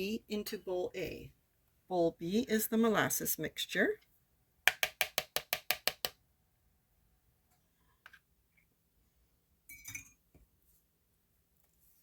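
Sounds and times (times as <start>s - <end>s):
spoon tapping a mixing bowl: 4.7s - 6.2s
dishware clinking: 9.7s - 10.2s.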